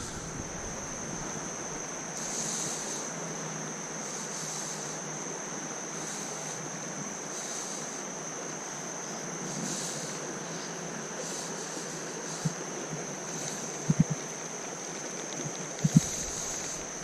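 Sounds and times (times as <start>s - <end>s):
creek water rushing over rocks: 13.6s - 17.0s.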